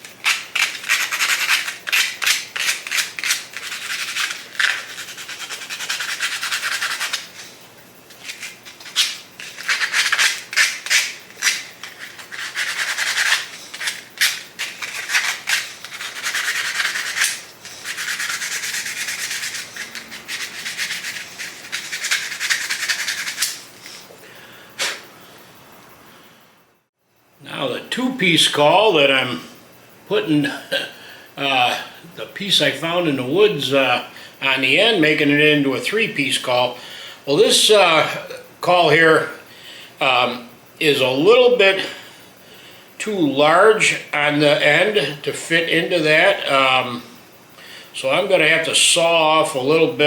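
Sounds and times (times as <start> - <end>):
sandpaper rubbing on bone: 0.0 - 7.4, 8.2 - 23.7.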